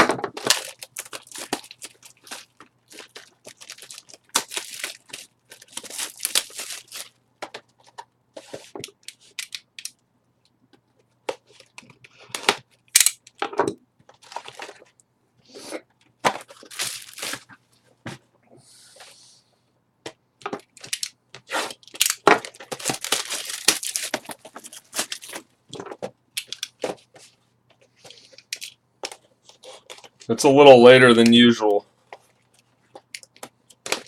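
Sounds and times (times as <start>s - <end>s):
plastic wrap crinkling and tearing: 0.3s - 7.2s, 16.3s - 17.5s, 20.8s - 25.5s, 33.0s - 34.0s.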